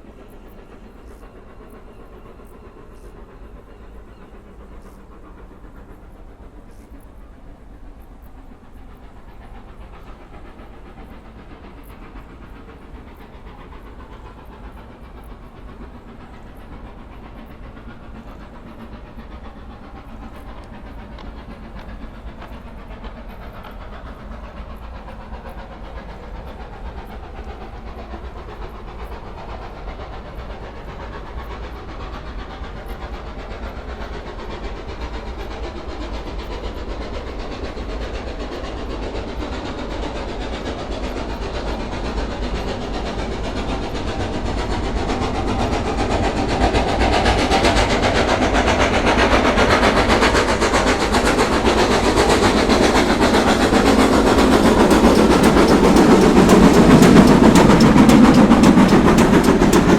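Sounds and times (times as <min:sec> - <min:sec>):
steam hissing: 0:00.0 - 0:59.9
steam locomotive rumble: 0:00.0 - 0:59.9.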